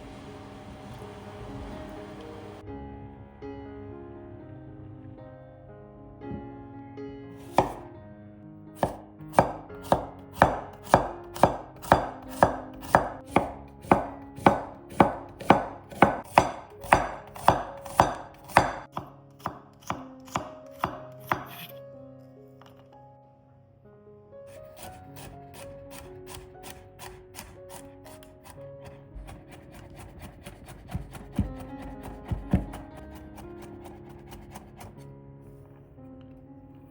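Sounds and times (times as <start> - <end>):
soft background music: 0.0 - 36.9
knife chopping on cutting board: 7.4 - 7.9, 8.8 - 21.7, 24.5 - 35.0.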